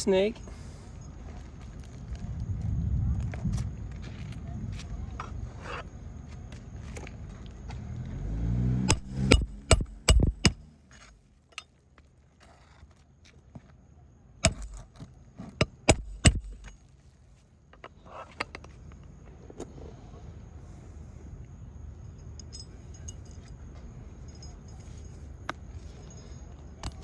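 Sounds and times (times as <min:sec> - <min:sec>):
low vehicle engine: 0:00.0 - 0:11.9
hammer striking metal: 0:08.9 - 0:10.7, 0:15.6 - 0:16.8.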